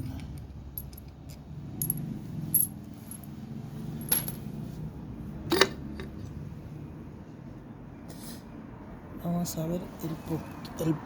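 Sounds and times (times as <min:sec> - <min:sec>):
metal parts and tools clinking: 0:03.9 - 0:04.6.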